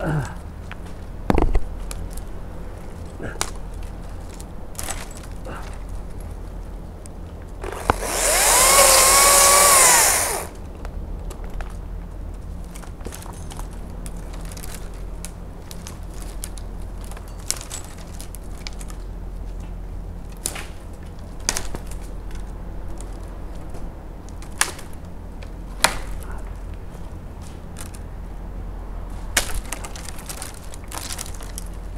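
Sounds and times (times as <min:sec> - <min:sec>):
electric chainsaw cutting: 0:07.6 - 0:10.6.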